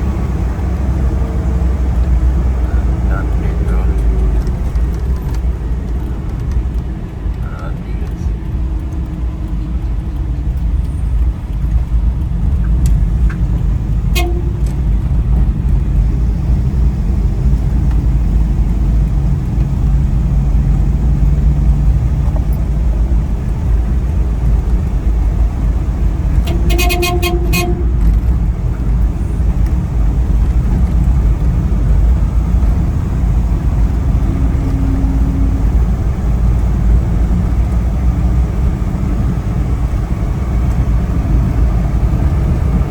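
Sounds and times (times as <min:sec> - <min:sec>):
vehicle engine and road rumble: 0:00.0 - 0:42.9
vehicle horn honking: 0:14.1 - 0:14.9, 0:26.4 - 0:28.0, 0:34.2 - 0:36.0.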